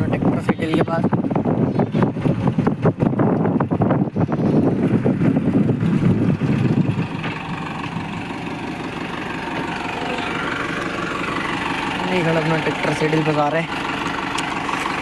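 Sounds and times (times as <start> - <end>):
small motorcycle engine idling: 6.1 - 15.0.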